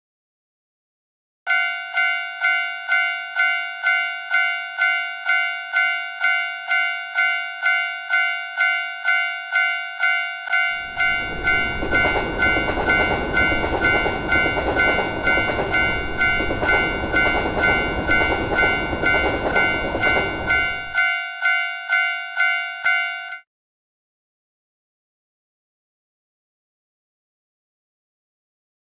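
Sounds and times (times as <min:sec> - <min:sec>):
level crossing bell ringing: 0:01.5 - 0:23.4
train rumbling and rattling: 0:10.6 - 0:21.0.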